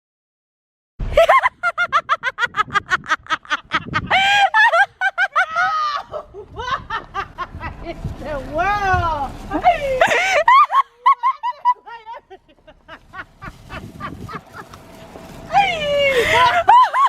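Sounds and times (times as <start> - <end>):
high-pitched laughter: 1.1 - 7.8, 9.5 - 14.8, 15.5 - 17.0.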